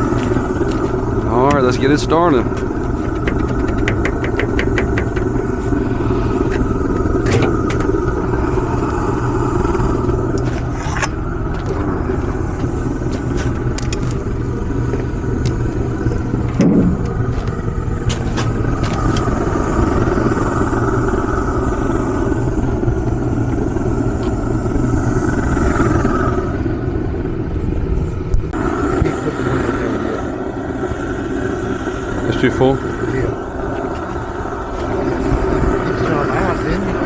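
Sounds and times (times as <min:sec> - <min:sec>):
engine rumbling: 0:00.0 - 0:37.0
short knock: 0:16.5 - 0:17.3.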